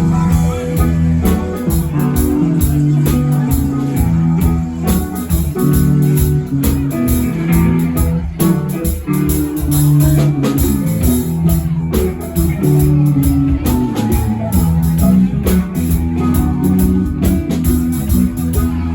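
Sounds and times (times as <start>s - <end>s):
bass notes: 0.0s - 18.9s
drums with steady beat: 0.0s - 18.9s
guitar: 0.0s - 18.9s.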